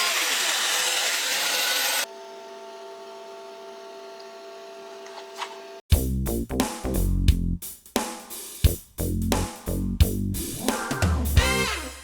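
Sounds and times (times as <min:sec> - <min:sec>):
power tool motor running: 0:00.0 - 0:02.2
music with drums and guitar: 0:05.9 - 0:12.0.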